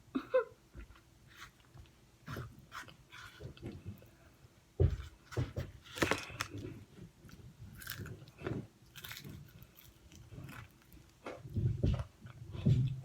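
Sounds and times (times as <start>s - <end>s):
crunchy chewing: 1.3s - 4.1s, 5.8s - 13.0s.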